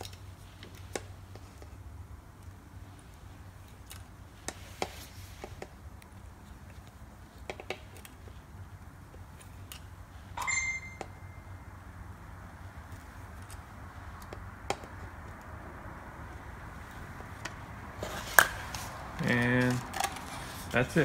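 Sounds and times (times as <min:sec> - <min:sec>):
metallic clink: 0:10.4 - 0:11.5.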